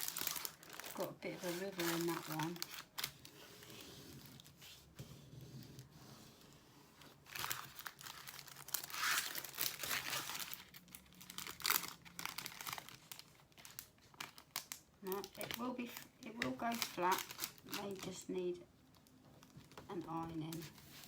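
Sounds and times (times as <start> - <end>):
plastic film crinkling: 0.0 - 5.0, 7.0 - 21.0.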